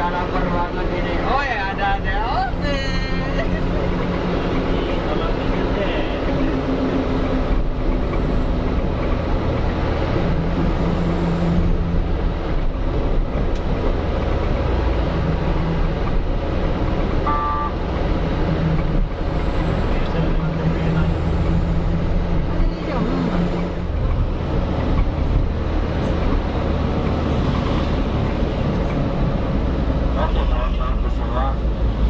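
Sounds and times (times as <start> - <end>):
truck engine rumble: 0.0 - 32.0
short horn toot: 17.2 - 17.8.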